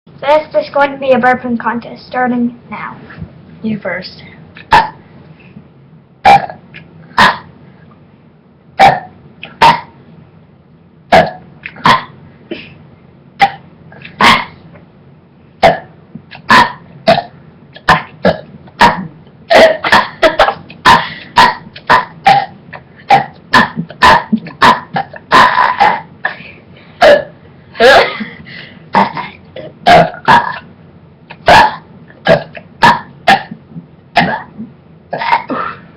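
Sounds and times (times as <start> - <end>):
person burping: 4.7 - 5.0, 6.2 - 7.5, 8.8 - 10.0, 11.1 - 12.8, 13.4 - 14.6, 15.6 - 26.4, 27.0 - 28.3, 28.9 - 30.7, 31.3 - 35.9
throat grunts: 15.6 - 28.4.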